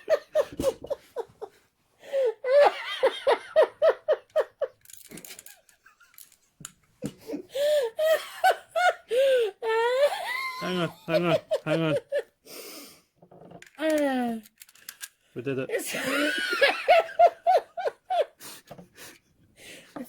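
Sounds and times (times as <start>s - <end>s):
person laughing: 7.2s - 12.3s, 15.7s - 18.3s.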